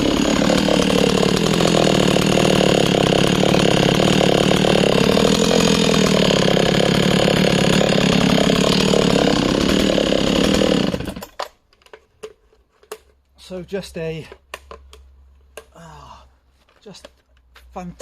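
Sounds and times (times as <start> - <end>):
chainsaw cutting wood: 0.0 - 11.5.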